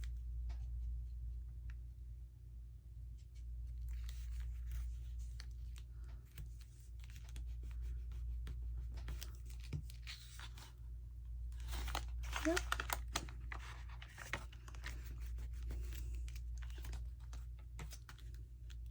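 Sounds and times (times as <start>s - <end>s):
steady low hum: 0.0s - 18.9s
paper and card rustling: 3.7s - 10.8s, 11.5s - 18.9s.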